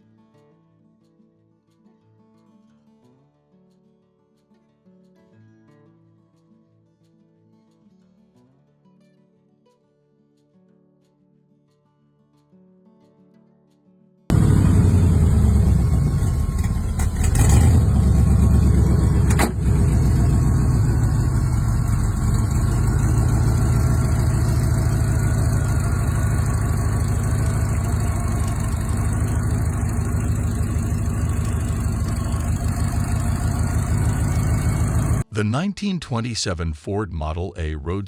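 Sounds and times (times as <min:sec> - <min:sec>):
car engine idling: 0:14.3 - 0:35.2.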